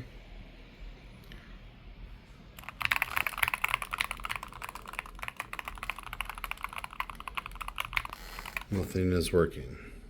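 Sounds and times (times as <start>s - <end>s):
mechanical keyboard keys clattering: 2.6s - 8.8s.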